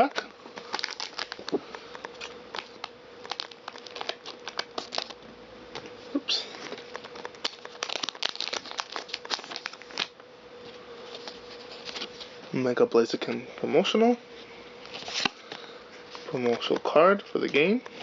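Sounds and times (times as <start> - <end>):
foil wrapper crinkling and tearing: 0.0 - 10.2, 11.0 - 12.4, 14.8 - 15.6.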